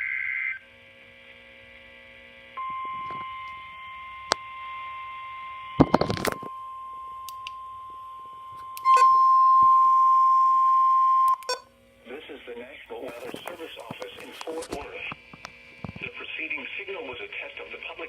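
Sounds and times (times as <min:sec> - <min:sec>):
steady warning alarm tone: 0:06.5 - 0:11.7
click: 0:07.3 - 0:07.6, 0:11.3 - 0:11.5.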